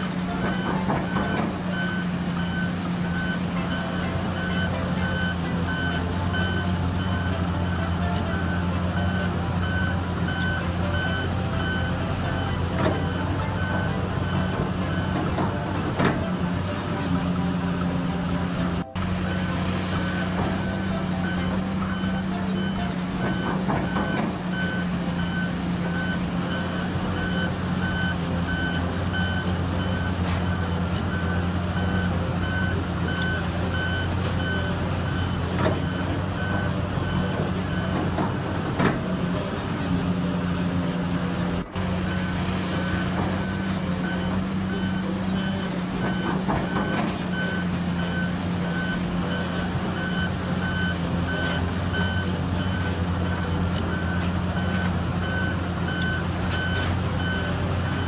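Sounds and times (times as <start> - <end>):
backup alarm beeping: 0.0 - 39.6, 41.3 - 58.0
diesel engine running: 0.0 - 58.0.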